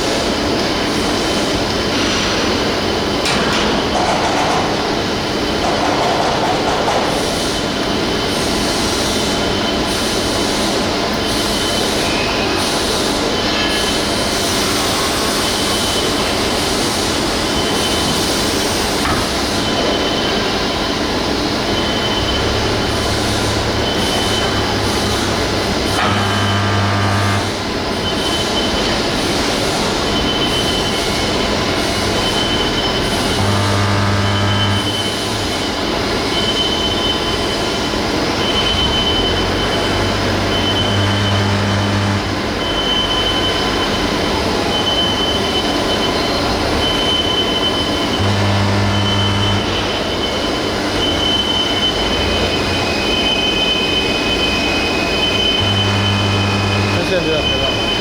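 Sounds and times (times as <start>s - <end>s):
heavy industrial machinery: 0.0s - 58.0s
high squeal: 21.6s - 58.0s
low hum: 55.6s - 57.0s.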